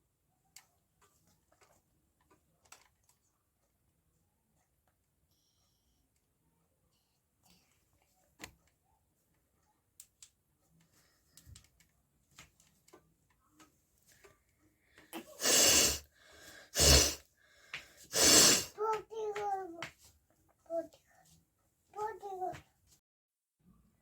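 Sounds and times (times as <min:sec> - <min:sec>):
faint clicks and taps: 0:00.5 - 0:03.9, 0:07.4 - 0:15.1, 0:18.8 - 0:23.0
air blasts through nose: 0:15.2 - 0:16.0, 0:16.7 - 0:17.2, 0:18.1 - 0:18.8.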